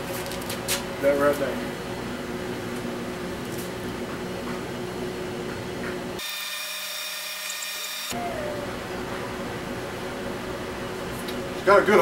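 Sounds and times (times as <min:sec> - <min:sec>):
fan humming: 0:00.0 - 0:06.4, 0:07.5 - 0:12.0
high-pitched whine: 0:07.2 - 0:11.3.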